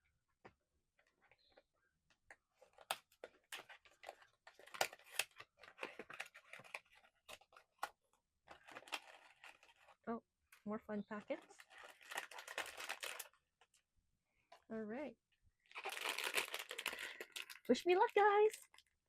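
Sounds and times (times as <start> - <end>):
cardboard and plastic crinkling: 2.5 - 10.1, 11.0 - 13.8, 15.7 - 19.0
packaging tearing: 2.8 - 7.9, 8.5 - 10.0, 11.5 - 13.4, 15.7 - 18.9.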